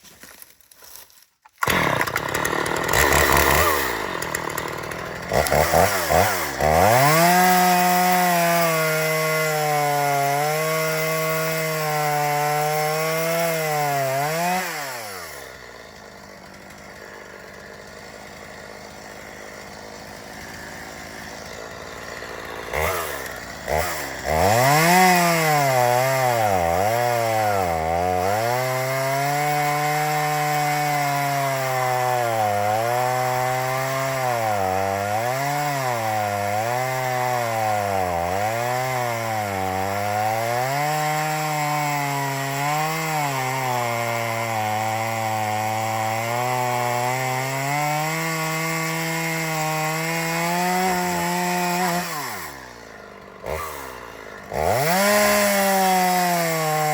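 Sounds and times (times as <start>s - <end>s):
chainsaw cutting log: 0.0s - 56.9s.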